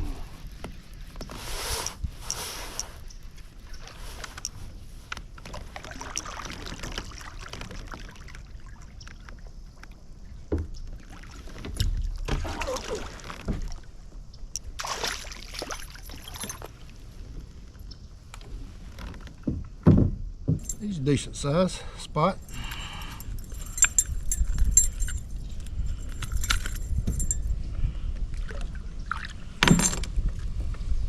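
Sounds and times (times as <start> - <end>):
water splashing: 5.6 - 9.3, 11.0 - 13.9, 14.7 - 16.8.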